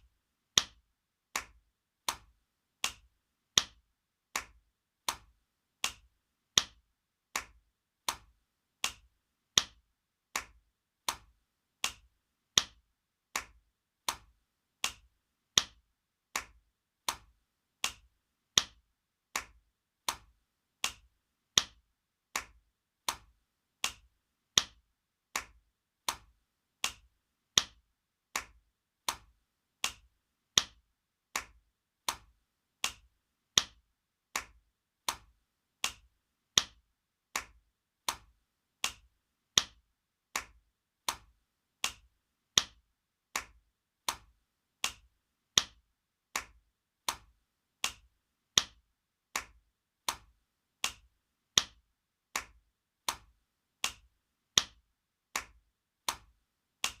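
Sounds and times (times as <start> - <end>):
sharp slaps: 4.4 - 6.8.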